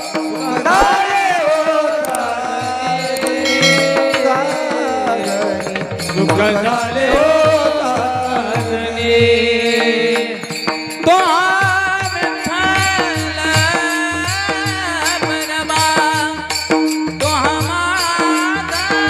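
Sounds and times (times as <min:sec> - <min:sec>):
men singing devotional song: 0:00.0 - 0:19.0
sustained accompanying notes: 0:02.4 - 0:10.1
hand drum strokes: 0:03.2 - 0:08.6.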